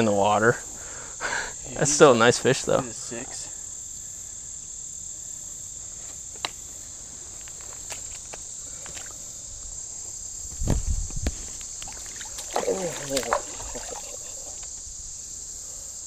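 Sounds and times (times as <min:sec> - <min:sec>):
insects trilling: 0:00.0 - 0:16.0
low thumps and rustling: 0:10.0 - 0:14.9.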